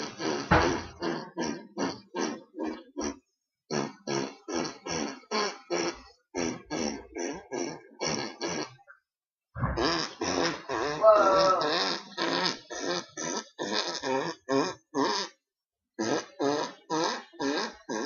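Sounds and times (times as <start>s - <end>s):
short fart sounds: 0.0s - 2.4s, 9.6s - 11.7s.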